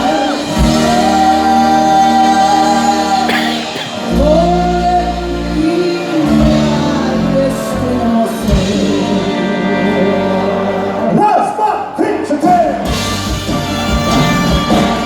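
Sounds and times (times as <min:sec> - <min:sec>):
long wooden horns playing: 0:13.0 - 0:15.0.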